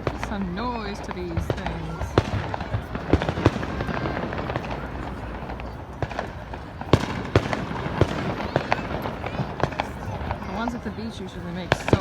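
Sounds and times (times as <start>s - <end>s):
fireworks bangs: 0.0s - 12.0s.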